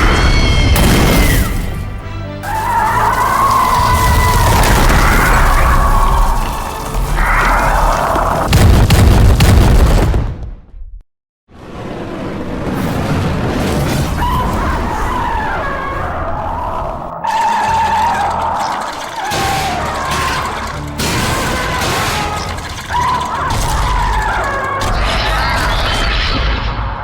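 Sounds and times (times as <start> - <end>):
monster screeching cries: 0.0 - 1.6, 2.4 - 8.5, 14.2 - 26.5.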